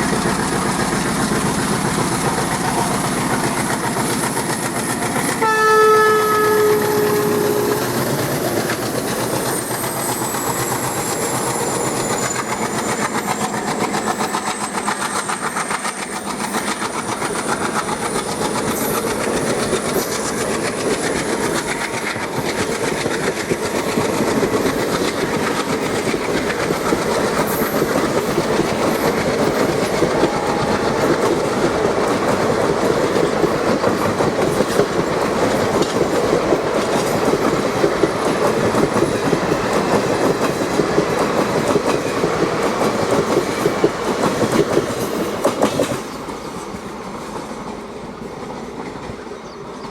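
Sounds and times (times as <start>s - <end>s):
train wheels clattering: 0.0s - 49.9s
train horn: 5.3s - 8.3s, 30.0s - 32.0s.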